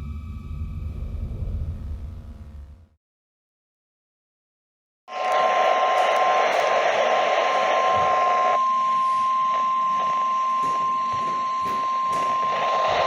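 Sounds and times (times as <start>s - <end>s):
radio hiss: 5.1s - 13.0s
radio static: 5.1s - 13.0s.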